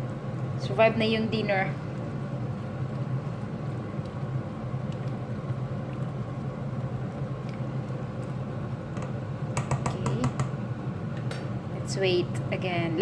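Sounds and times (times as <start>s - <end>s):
soup pot rumbling on stove: 1.9s - 11.7s.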